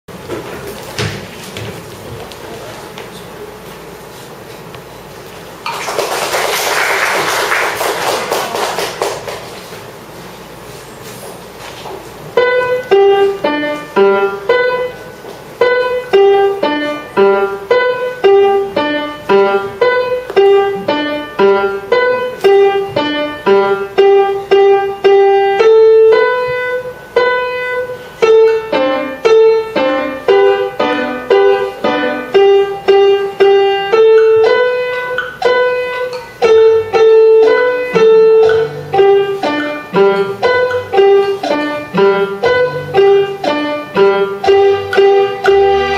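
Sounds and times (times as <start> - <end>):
piano alarm melody: 12.4 - 45.9.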